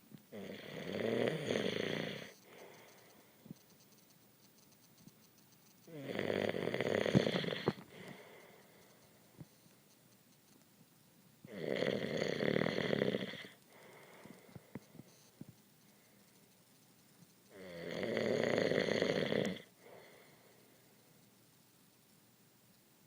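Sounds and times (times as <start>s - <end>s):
loud snoring: 0.3s - 2.4s, 5.9s - 7.8s, 11.5s - 13.6s, 17.5s - 19.7s.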